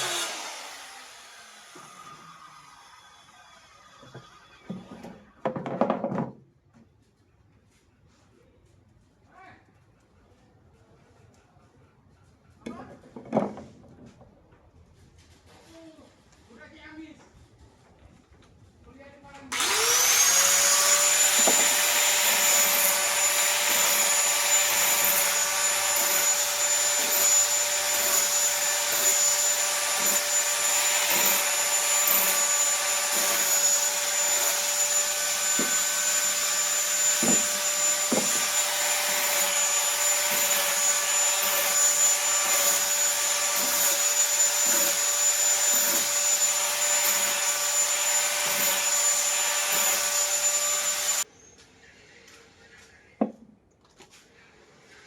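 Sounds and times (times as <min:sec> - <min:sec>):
power tool whining: 0:00.0 - 0:05.2, 0:19.5 - 0:51.3
knocks and scrapes on wood: 0:04.1 - 0:06.9, 0:12.6 - 0:14.3, 0:38.1 - 0:38.4.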